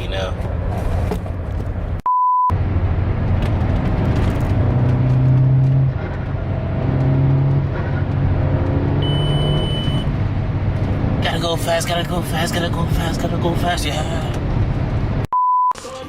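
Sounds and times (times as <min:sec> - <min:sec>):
road noise: 0:00.0 - 0:15.3
short pure beep: 0:02.0 - 0:02.5, 0:09.0 - 0:10.1, 0:15.3 - 0:15.8
car engine drone inside car: 0:02.5 - 0:15.3.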